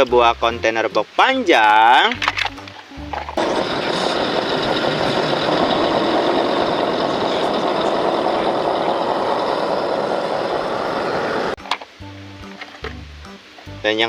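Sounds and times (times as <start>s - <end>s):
water jet spraying: 3.4s - 11.6s.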